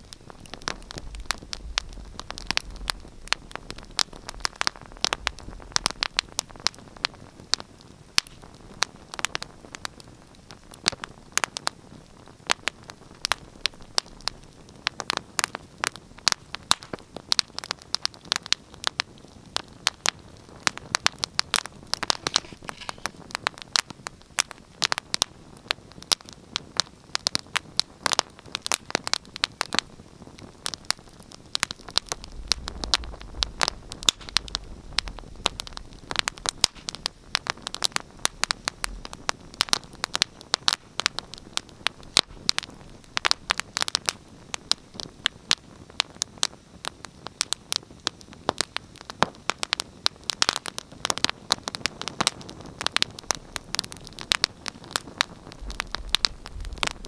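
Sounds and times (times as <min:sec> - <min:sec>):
faint low rumble: 0:00.0 - 0:07.5, 0:29.8 - 0:40.3, 0:53.2 - 0:57.0
soft hiss: 0:00.0 - 0:57.0
wood fire crackling: 0:00.0 - 0:57.0.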